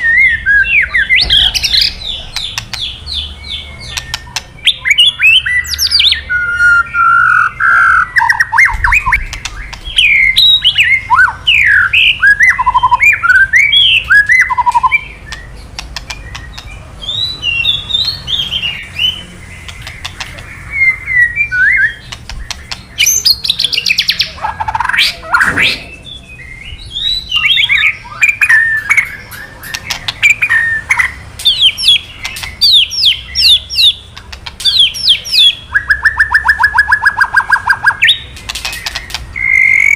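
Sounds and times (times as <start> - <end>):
rapid dry clicking bird calls: 0.8 - 6.1, 7.3 - 26.2, 27.0 - 39.9
bird singing whistled phrases: 3.9 - 15.5, 20.7 - 22.1, 23.0 - 32.0, 34.7 - 38.2, 39.4 - 39.9.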